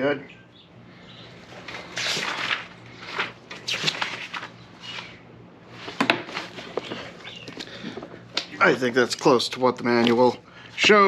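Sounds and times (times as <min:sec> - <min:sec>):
rustling: 0:01.4 - 0:08.0.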